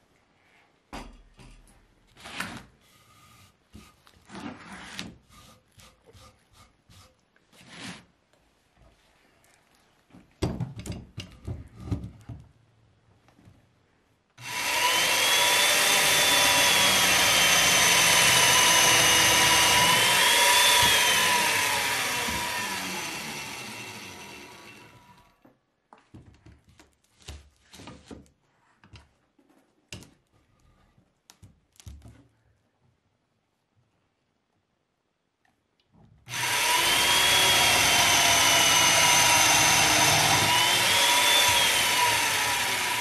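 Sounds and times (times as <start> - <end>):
electric power tool cutting wood: 14.4 - 25.3, 36.3 - 43.0.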